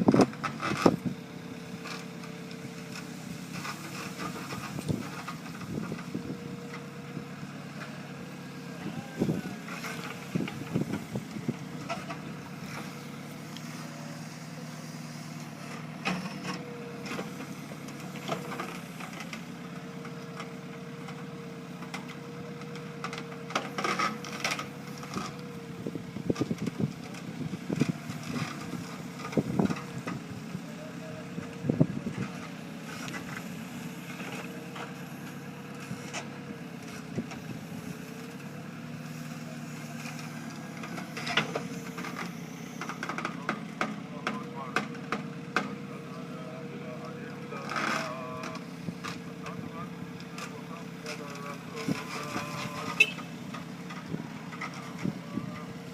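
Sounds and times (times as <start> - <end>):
heavy machine engine running: 0.0 - 55.9.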